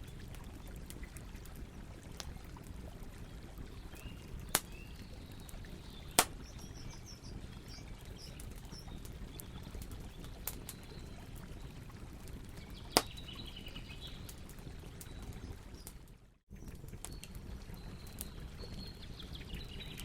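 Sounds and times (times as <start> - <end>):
campfire crackling: 0.0 - 18.9
birds chirping: 3.8 - 11.7.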